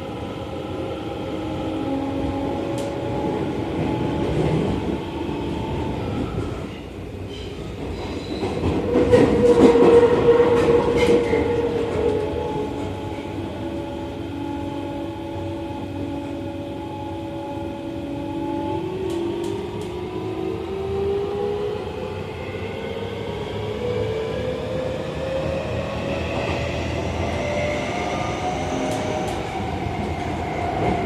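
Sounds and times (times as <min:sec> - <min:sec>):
train wheels rumbling on rails: 0:00.0 - 0:31.0
train clatter: 0:06.5 - 0:12.9.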